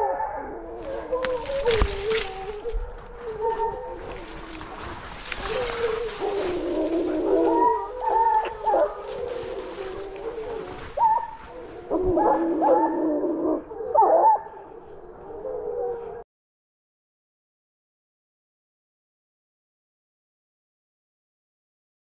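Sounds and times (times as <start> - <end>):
hounds baying: 0.0 - 16.2.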